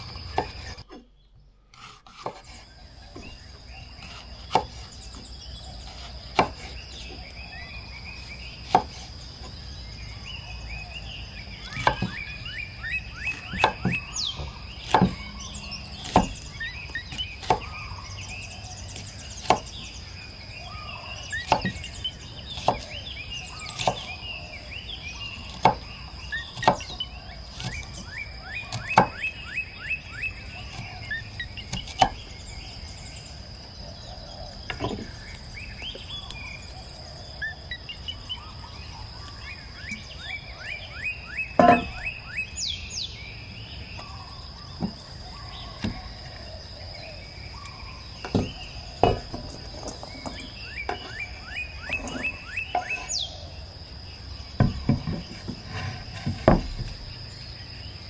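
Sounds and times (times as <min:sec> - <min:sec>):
bird chirps: 0:00.0 - 0:58.0
sharp chopping strokes: 0:01.8 - 0:03.4, 0:04.0 - 0:06.8, 0:11.7 - 0:12.2, 0:14.8 - 0:17.8, 0:19.0 - 0:19.8, 0:21.4 - 0:21.9, 0:23.6 - 0:24.2, 0:25.4 - 0:25.9, 0:26.5 - 0:28.0, 0:31.7 - 0:32.2.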